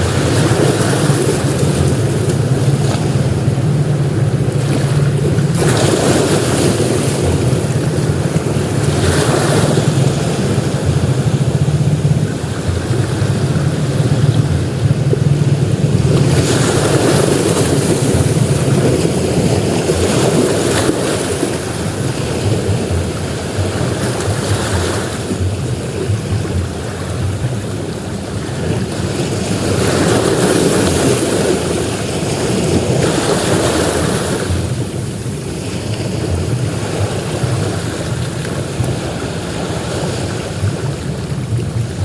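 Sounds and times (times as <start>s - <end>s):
waves breaking on a beach: 0.0s - 42.0s.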